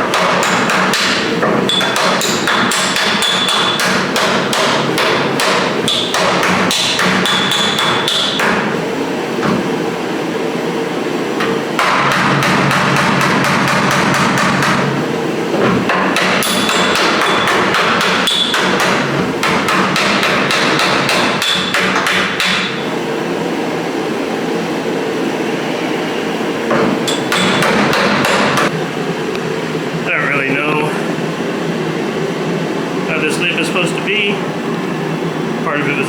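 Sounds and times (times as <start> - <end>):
tool knocking on sheet metal: 0.0 - 8.7, 11.8 - 15.0, 15.9 - 22.8, 26.7 - 28.7
steady hum: 0.0 - 36.0.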